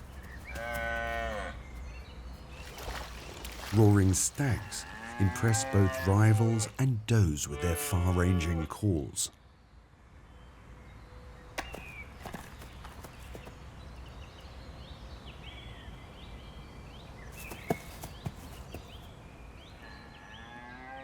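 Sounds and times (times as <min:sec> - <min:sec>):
twigs cracking underfoot: 0:00.0 - 0:04.0.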